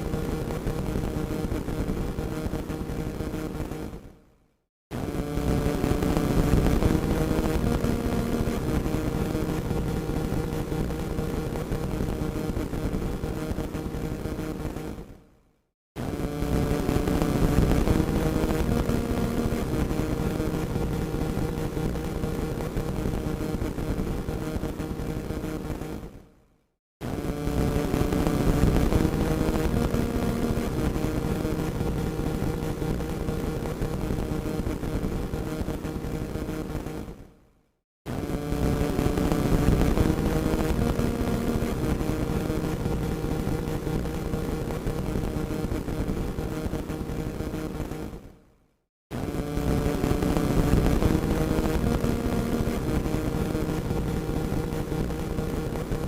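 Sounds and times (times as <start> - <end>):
radio static hiss and crackle: 0.0 - 4.2, 5.0 - 15.2, 16.0 - 26.2, 27.0 - 37.2, 38.1 - 48.3, 49.2 - 56.0.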